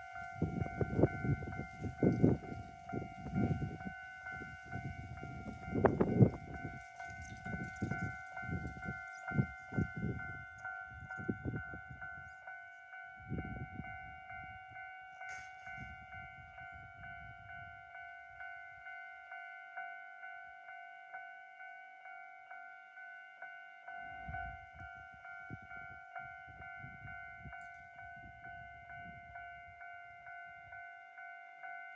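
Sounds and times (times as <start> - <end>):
train clattering over rails: 0.0 - 11.6
level-crossing alarm bell: 0.0 - 31.9.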